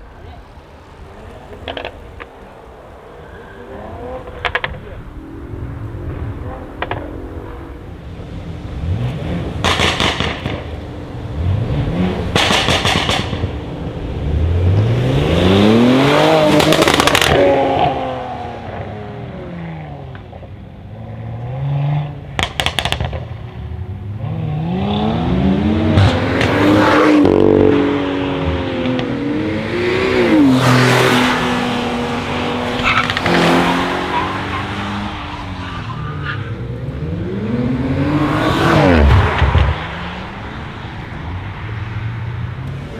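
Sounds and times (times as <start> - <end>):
exhaust crackles and pops: 1.2 - 2.6, 4.1 - 8.2, 9.0 - 10.9, 12.3 - 13.6, 16.5 - 17.4, 22.3 - 23.4
engine revving: 14.2 - 18.9, 36.4 - 40.8.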